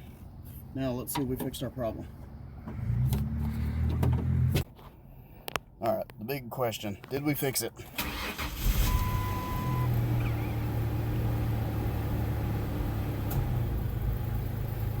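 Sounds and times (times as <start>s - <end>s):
truck engine starting and idling: 7.8s - 15.0s
beep: 8.8s - 9.9s.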